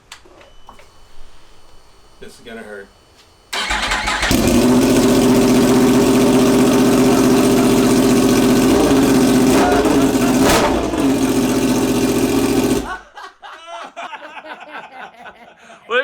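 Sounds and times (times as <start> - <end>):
motorcycle engine idling loudly: 3.6 - 13.0.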